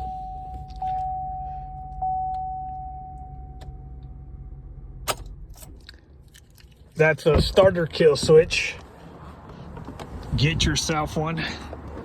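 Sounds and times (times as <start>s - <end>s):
dashboard warning chime: 0.0s - 4.7s
low steady cab hum: 0.0s - 12.0s.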